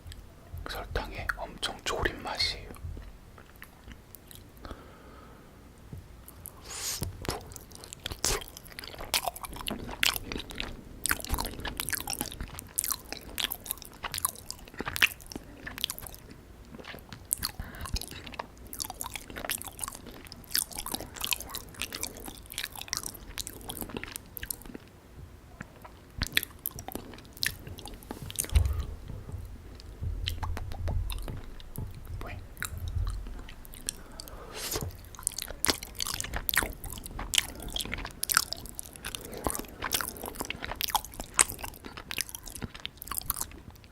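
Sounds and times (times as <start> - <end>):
chewing and biting: 2.4 - 4.7, 6.3 - 25.0, 25.6 - 43.9
low thumps: 2.7 - 3.4, 27.4 - 38.4
mouth clicks and smacks: 6.3 - 24.9, 25.6 - 43.9.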